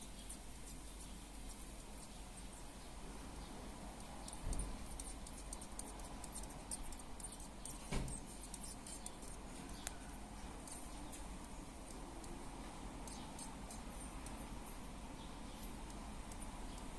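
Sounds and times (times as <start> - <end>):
insect tapping on window glass: 4.0 - 14.6, 15.8 - 16.9.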